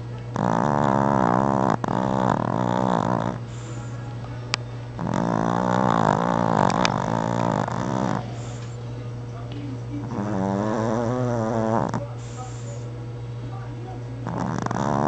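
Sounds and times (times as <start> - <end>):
dog snoring: 0.3 - 4.0, 5.0 - 8.8, 10.0 - 12.8, 14.2 - 15.0.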